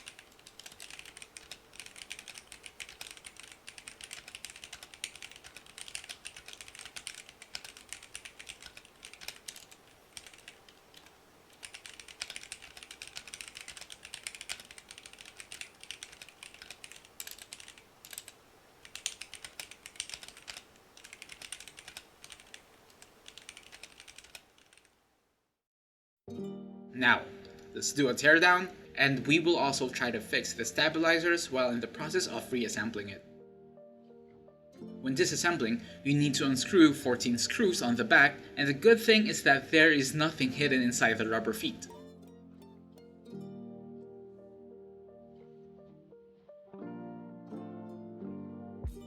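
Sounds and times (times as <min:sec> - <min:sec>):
mechanical keyboard typing: 0:00.0 - 0:25.0.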